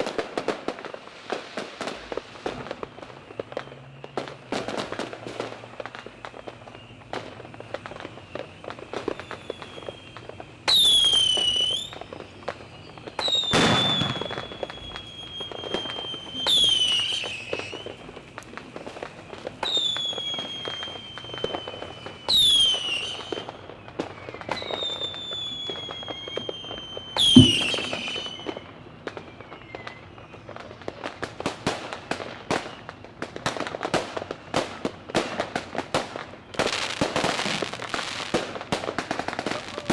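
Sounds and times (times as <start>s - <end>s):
firework bang: 0.0s - 23.4s, 27.2s - 28.6s
firework whistles falling in pitch: 0.0s - 30.7s, 36.6s - 39.9s
fireworks crackling pops: 0.0s - 39.9s.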